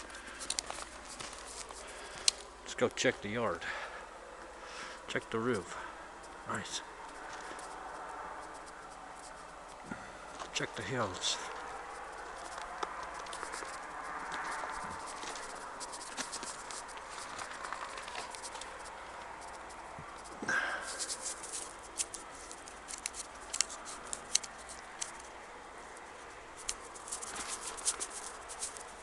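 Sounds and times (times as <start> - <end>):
footsteps crunching in snow: 0.0 - 2.4, 10.4 - 18.9, 20.2 - 22.0, 26.8 - 29.0.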